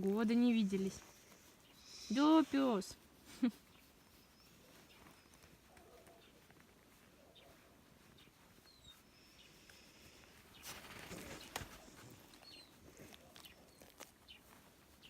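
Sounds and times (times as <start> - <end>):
brief rustle: 10.5 - 12.5.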